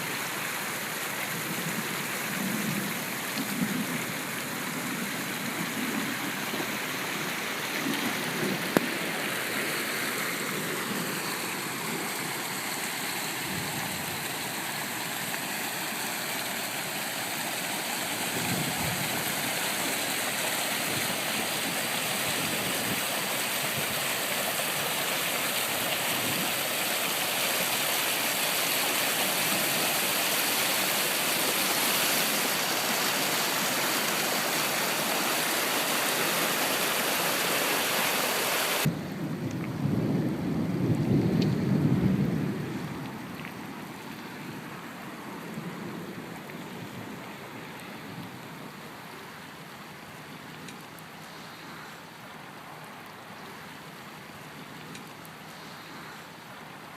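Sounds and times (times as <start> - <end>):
fast-running water rushing: 0.0 - 39.1.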